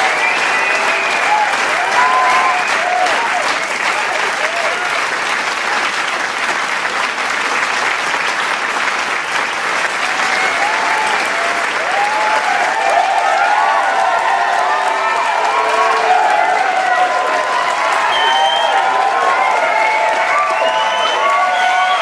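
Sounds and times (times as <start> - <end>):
crowd whooping and cheering: 0.0 - 5.1, 9.8 - 22.0
crowd applauding: 0.0 - 22.0.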